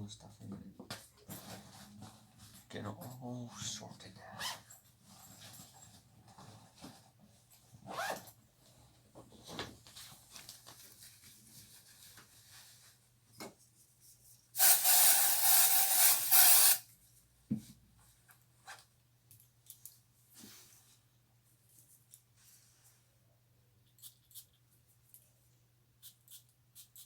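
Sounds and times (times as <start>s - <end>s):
spraying hiss: 14.6s - 16.8s.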